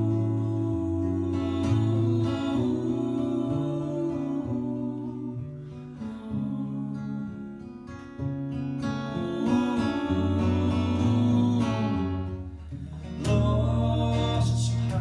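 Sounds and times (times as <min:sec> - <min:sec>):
acoustic guitar chords: 0:00.0 - 0:15.0.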